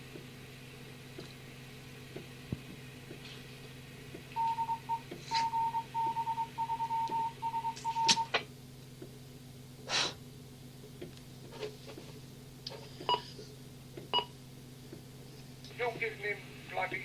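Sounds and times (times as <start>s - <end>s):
radio hum and hiss: 0.1s - 6.9s, 7.5s - 17.0s
high beep keyed on and off: 4.4s - 8.3s.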